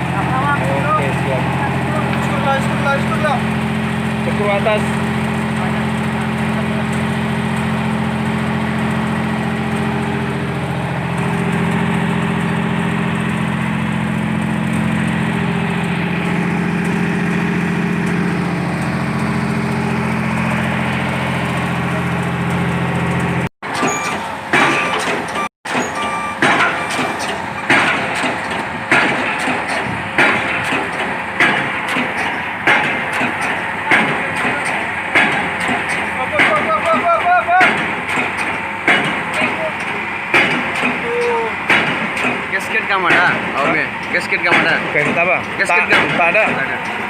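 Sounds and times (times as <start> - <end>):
diesel engine running: 0.0 - 47.0
sharp knocks: 24.5 - 41.0, 41.7 - 45.2.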